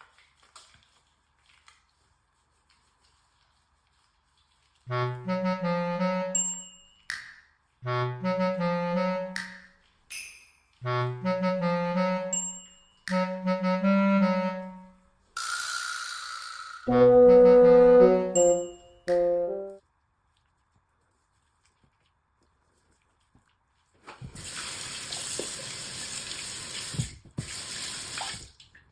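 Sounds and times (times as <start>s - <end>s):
background music melodic phrase: 4.9s - 6.5s, 7.8s - 9.5s, 10.8s - 12.5s, 13.1s - 15.0s, 16.9s - 19.8s
bright ding: 18.4s - 19.3s.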